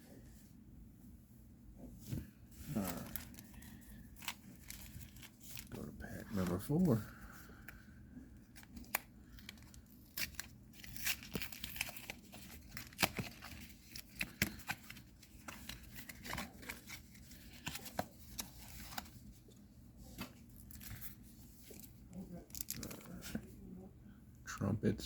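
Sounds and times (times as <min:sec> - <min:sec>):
wrapper tearing and crinkling: 0:02.7 - 0:06.6, 0:08.5 - 0:19.2, 0:21.8 - 0:23.3.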